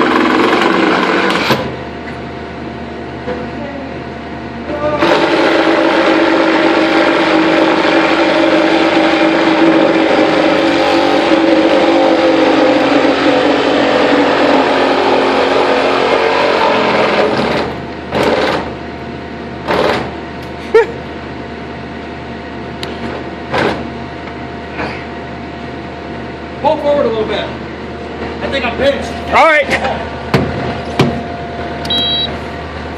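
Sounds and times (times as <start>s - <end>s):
reciprocating saw cutting: 5.0s - 18.7s.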